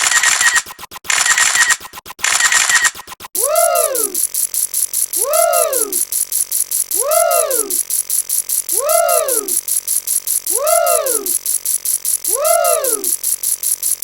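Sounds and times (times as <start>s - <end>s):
rapid ratchet-like ticking: 0.0s - 14.0s
swooping pitched tone: 3.4s - 4.3s, 5.1s - 6.1s, 6.8s - 7.9s, 8.6s - 9.7s, 10.4s - 11.4s, 12.2s - 13.3s.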